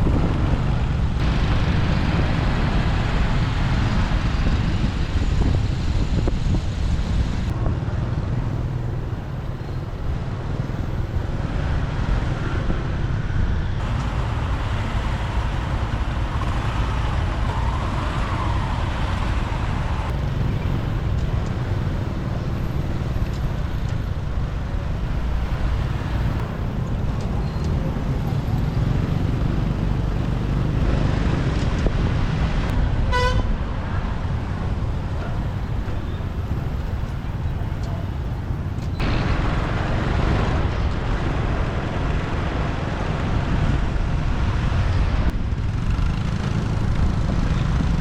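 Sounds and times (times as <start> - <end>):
motorbike engine and road rumble: 0.0 - 48.0
vehicle horn toot: 33.1 - 33.5.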